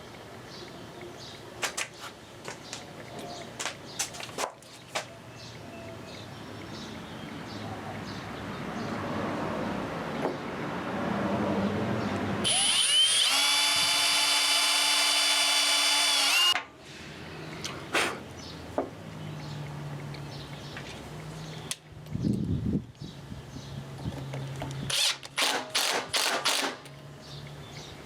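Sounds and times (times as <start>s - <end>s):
power drill whining: 12.4s - 16.6s, 24.9s - 26.8s.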